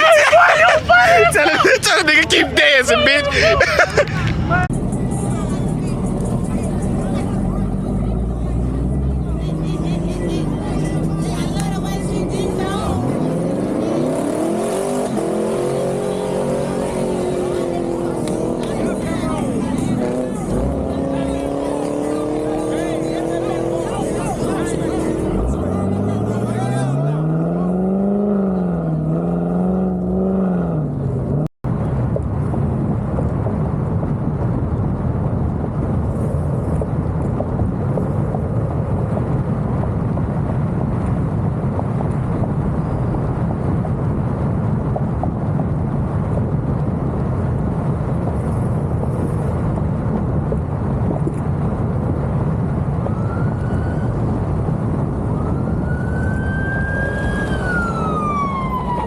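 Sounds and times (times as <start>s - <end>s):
siren wailing: 0.0s - 4.7s, 55.2s - 59.0s
traffic rumble: 0.0s - 59.0s.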